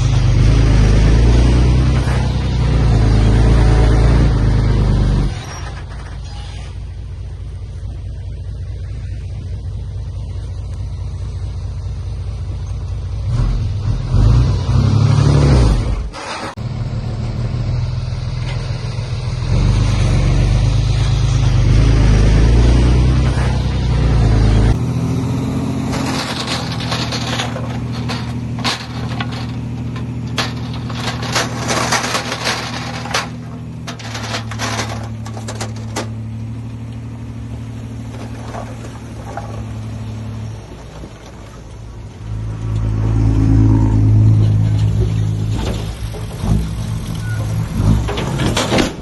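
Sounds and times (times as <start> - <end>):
diesel machinery running: 0.0 - 49.0
clanks and knocks: 25.8 - 36.9, 37.9 - 40.2, 44.3 - 49.0.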